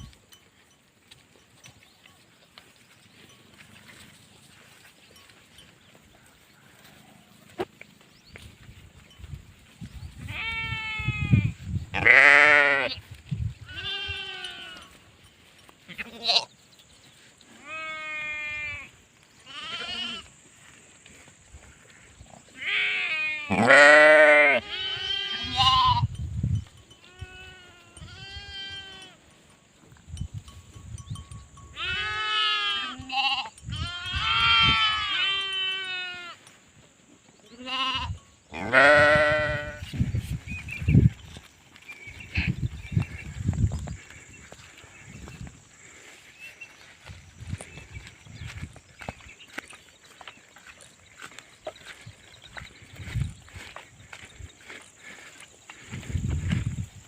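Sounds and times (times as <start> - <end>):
sheep bleating: 10.2 - 13.0, 13.6 - 15.0, 15.8 - 16.5, 17.5 - 20.3, 22.5 - 26.1, 27.0 - 29.2, 31.8 - 36.4, 37.5 - 39.9.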